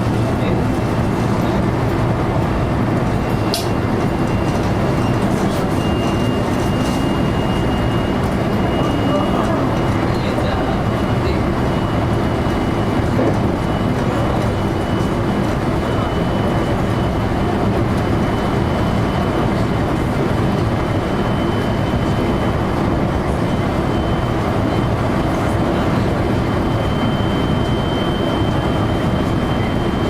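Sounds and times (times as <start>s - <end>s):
train wheels rumbling on rail: 0.0s - 30.0s.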